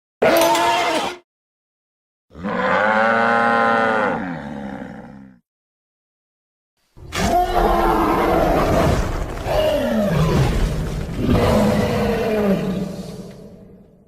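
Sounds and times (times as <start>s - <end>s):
deep dinosaur roar: 2.3s - 5.4s, 7.0s - 14.0s.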